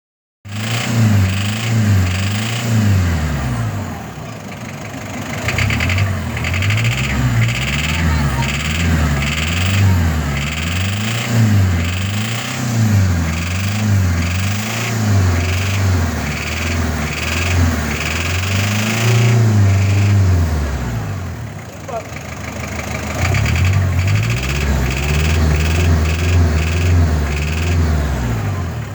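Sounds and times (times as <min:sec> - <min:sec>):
diesel engine humming: 0:00.5 - 0:28.9
engine ticking: 0:00.5 - 0:28.9.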